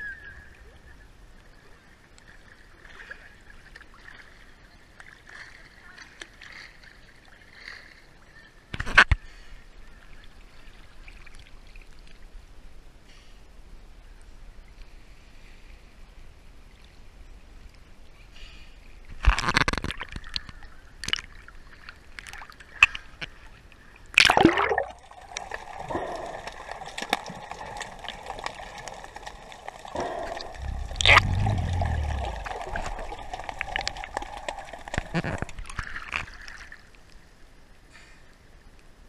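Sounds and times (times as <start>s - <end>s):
loud sudden splashes or knocks: 24.2s - 25.0s, 29.9s - 36.4s
sea water splashing and sloshing: 24.2s - 37.4s.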